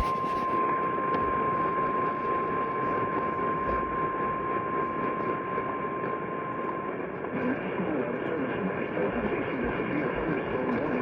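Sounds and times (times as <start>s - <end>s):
radio static: 0.0s - 0.5s.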